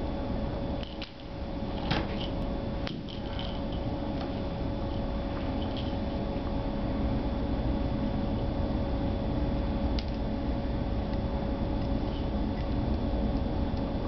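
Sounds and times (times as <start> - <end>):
background hum and hiss: 0.0 - 14.0.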